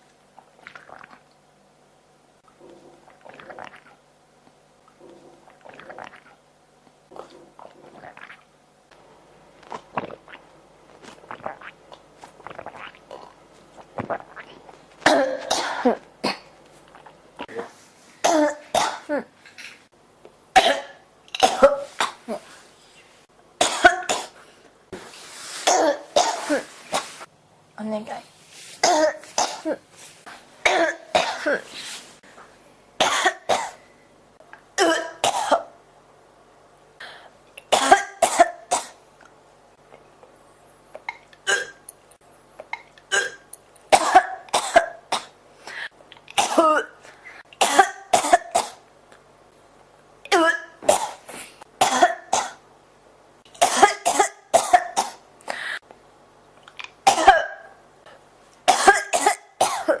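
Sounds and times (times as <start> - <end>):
person coughing: 15.0 - 16.5, 17.5 - 19.3, 20.6 - 22.4, 25.7 - 26.8, 28.8 - 29.8, 30.6 - 31.7, 34.8 - 35.7, 41.4 - 41.8, 43.1 - 47.0, 53.6 - 55.8, 57.1 - 57.7, 58.7 - 60.0.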